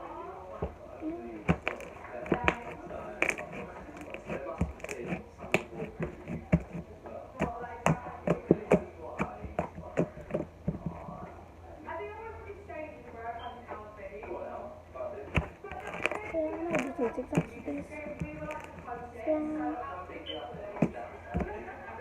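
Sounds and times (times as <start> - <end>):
slime squished by hand: 1.4 - 6.8, 15.3 - 18.9.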